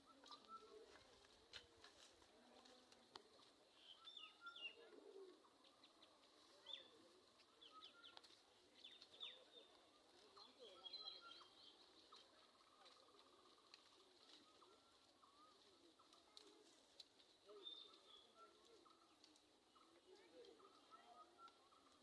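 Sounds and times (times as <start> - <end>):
bird chirps: 3.8 - 4.9, 8.8 - 13.7.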